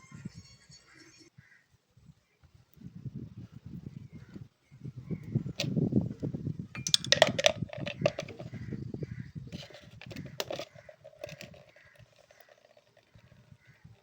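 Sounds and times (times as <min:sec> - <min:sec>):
metal tools clinking and clattering: 0:06.8 - 0:08.4.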